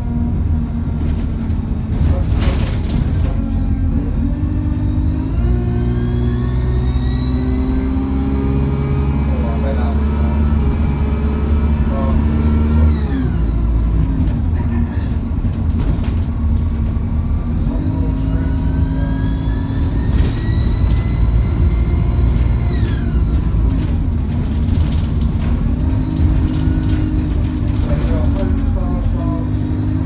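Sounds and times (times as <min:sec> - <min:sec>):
bus diesel engine drone: 0:00.0 - 0:30.0
turbocharger whine: 0:04.2 - 0:13.8, 0:17.3 - 0:23.6.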